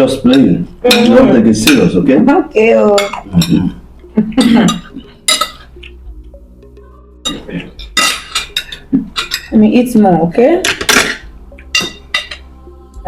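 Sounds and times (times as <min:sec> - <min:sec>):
low background music drone: 0:00.0 - 0:13.0
cutlery clinking against plates: 0:00.2 - 0:02.0, 0:04.3 - 0:05.8, 0:07.2 - 0:09.6, 0:10.6 - 0:12.5.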